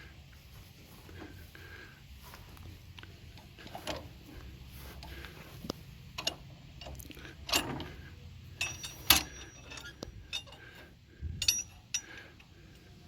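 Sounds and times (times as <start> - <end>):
steel parts clanking: 6.1 - 13.0
sharp metal knocks: 8.6 - 10.5.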